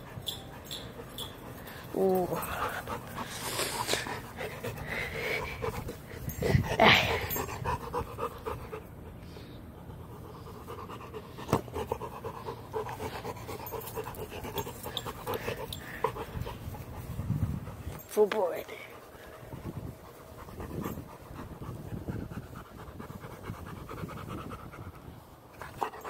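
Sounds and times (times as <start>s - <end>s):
dog panting: 0.0s - 26.0s.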